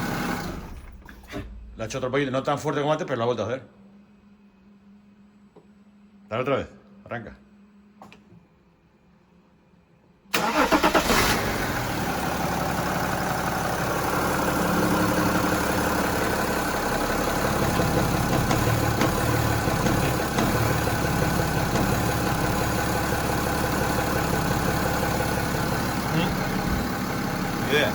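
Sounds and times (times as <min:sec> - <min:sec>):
car engine cranking and idling: 0:00.0 - 0:01.7, 0:10.3 - 0:27.9.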